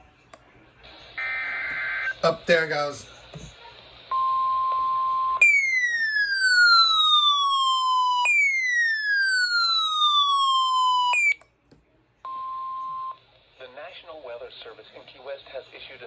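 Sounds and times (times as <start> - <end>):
weather radio alert tones: 1.2 - 3.5.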